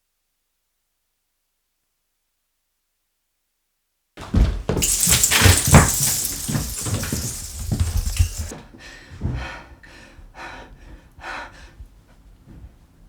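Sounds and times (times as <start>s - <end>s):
rustling and handling noise: 4.7s - 8.5s.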